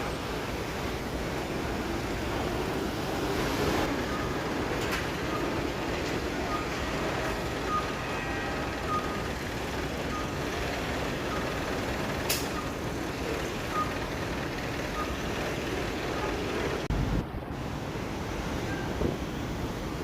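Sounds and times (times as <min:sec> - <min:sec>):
engines and traffic rumbling: 0:00.0 - 0:20.0
reversing alarm beeping: 0:03.9 - 0:16.6
sharp click: 0:12.3 - 0:12.6.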